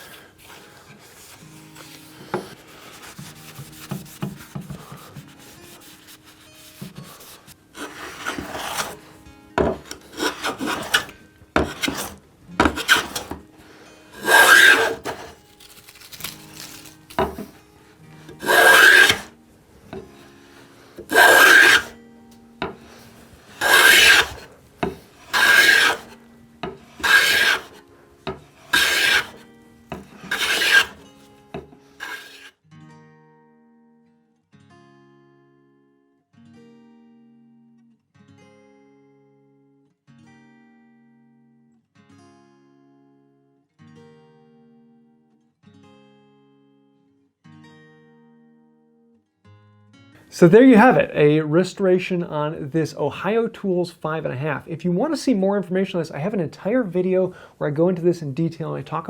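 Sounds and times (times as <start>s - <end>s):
hand plane scraping wood: 0.0s - 9.1s, 9.7s - 13.4s, 14.2s - 17.6s, 18.3s - 19.3s, 21.0s - 22.0s, 22.7s - 32.5s.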